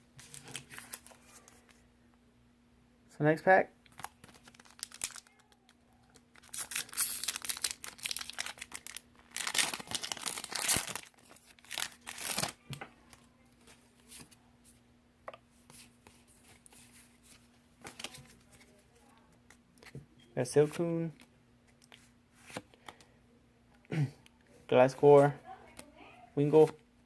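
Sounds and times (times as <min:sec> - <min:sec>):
foil wrapper tearing and crinkling: 0:03.9 - 0:12.6.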